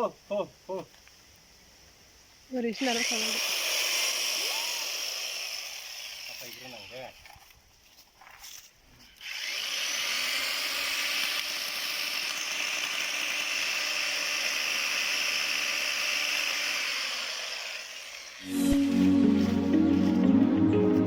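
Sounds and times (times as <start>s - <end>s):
electric chainsaw running: 2.8s - 7.1s, 9.2s - 20.0s.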